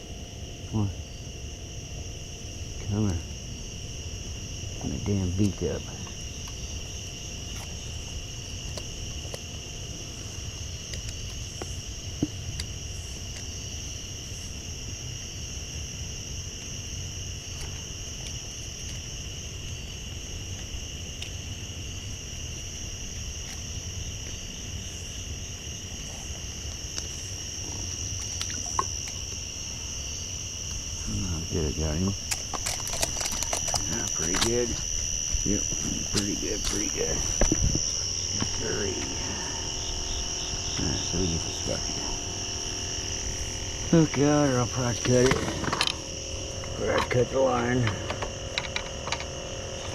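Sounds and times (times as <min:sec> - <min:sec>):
high-pitched insect chorus: 0:00.0 - 0:49.9
low steady rumble: 0:33.4 - 0:49.9.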